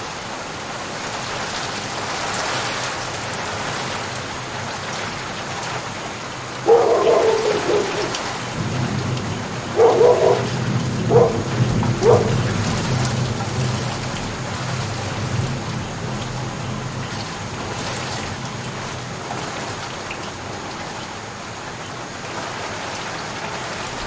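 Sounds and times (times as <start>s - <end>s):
rain falling: 0.0s - 24.0s
dog barking: 6.6s - 13.1s, 21.5s - 24.0s.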